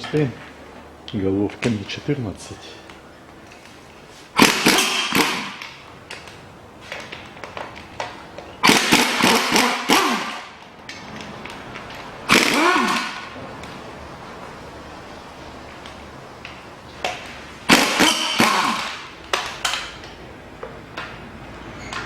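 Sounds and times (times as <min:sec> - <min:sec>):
impact wrench whirring and hammering: 0:04.3 - 0:06.3, 0:06.9 - 0:13.4, 0:15.8 - 0:20.1
tools and bolts clicking: 0:04.4 - 0:13.8, 0:15.7 - 0:20.2, 0:21.0 - 0:22.0.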